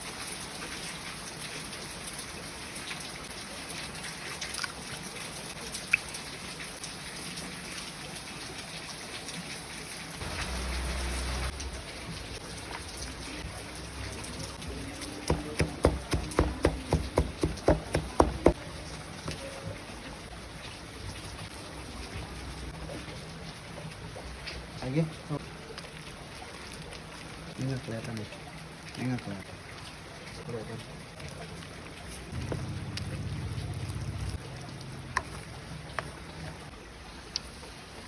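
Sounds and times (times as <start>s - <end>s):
steady frying hiss: 8.6s - 38.0s.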